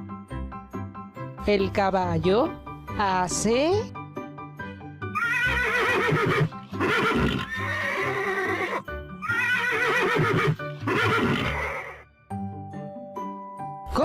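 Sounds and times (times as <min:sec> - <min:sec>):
light background music: 0:00.0 - 0:14.0
horse neighing: 0:05.2 - 0:12.0.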